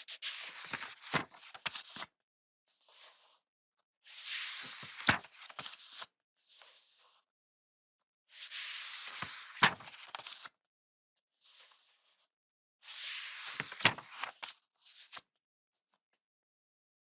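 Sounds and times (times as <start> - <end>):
book pages turning: 0.0 - 2.1, 4.1 - 7.2, 8.4 - 10.5, 12.9 - 15.2.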